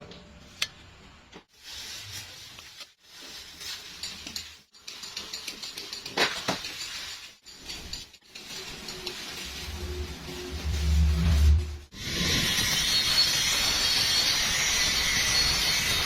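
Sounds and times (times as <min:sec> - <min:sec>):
welding arc crackling: 0:08.3 - 0:16.0.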